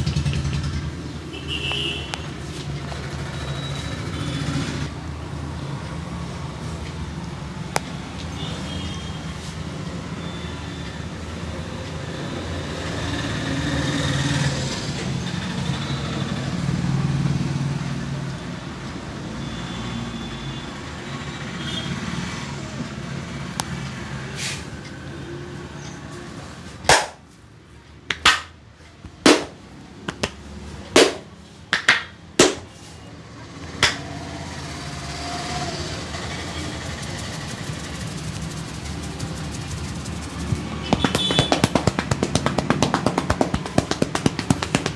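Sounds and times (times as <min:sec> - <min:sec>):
street traffic noise: 0:00.0 - 0:44.9
hand slaps: 0:26.9 - 0:27.2, 0:28.1 - 0:28.6, 0:29.2 - 0:30.4, 0:31.0 - 0:32.7, 0:33.8 - 0:34.0, 0:40.8 - 0:44.9.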